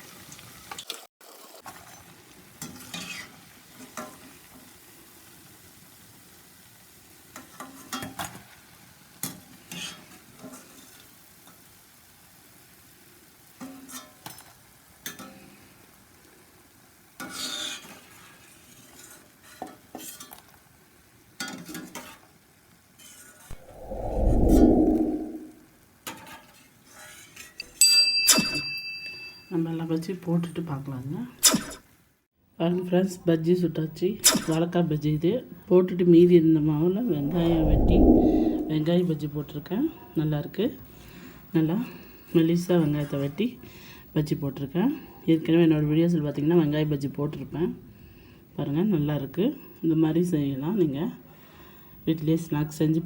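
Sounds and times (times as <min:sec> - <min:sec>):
batter frying in hot oil: 0:00.0 - 0:23.3
loud dull low rumble: 0:37.0 - 0:39.0.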